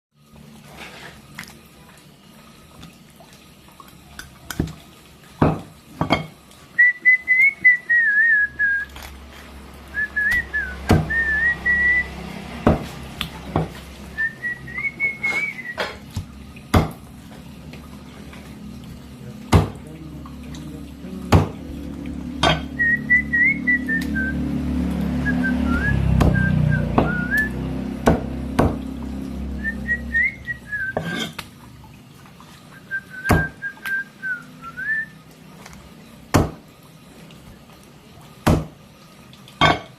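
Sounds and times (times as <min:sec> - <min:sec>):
person whistling a tune: 0:06.8 - 0:09.0, 0:09.9 - 0:12.2, 0:14.2 - 0:16.0, 0:22.7 - 0:24.5, 0:25.2 - 0:27.6, 0:29.5 - 0:31.2, 0:32.8 - 0:35.2.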